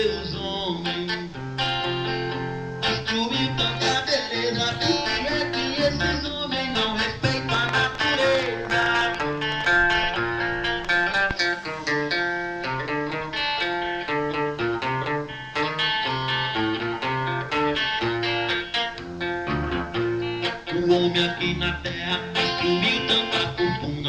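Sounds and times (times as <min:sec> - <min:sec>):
bass line: 0:00.0 - 0:15.4, 0:19.2 - 0:23.0
plucked guitar melody: 0:00.0 - 0:24.0.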